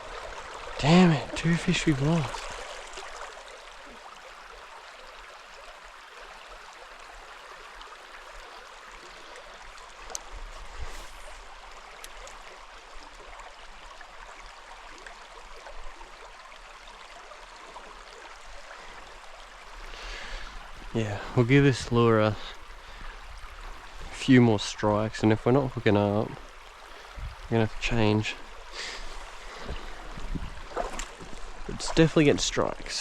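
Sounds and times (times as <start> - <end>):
stream water running over rocks: 0.0 - 33.0
faint clicks: 10.0 - 10.3.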